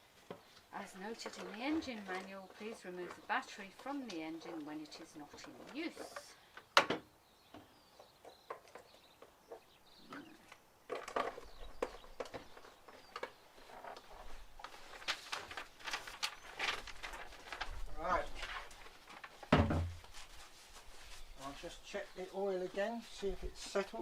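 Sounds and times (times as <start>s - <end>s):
clicks and knocks of handling: 10.4s - 17.7s.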